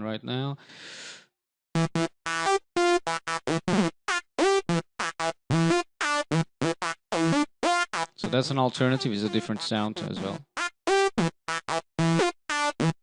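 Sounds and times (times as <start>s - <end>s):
synth lead staccato notes: 4.7s - 12.9s.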